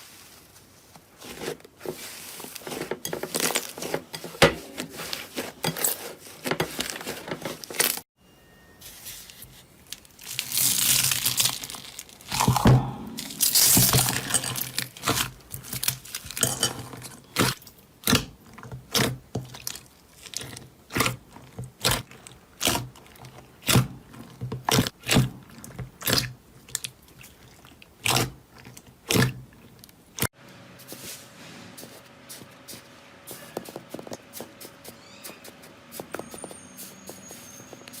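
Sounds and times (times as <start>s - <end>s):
slime crackling and crunching: 9.9s - 18.2s
slime squelching: 10.2s - 30.3s
slime popping: 12.2s - 14.8s.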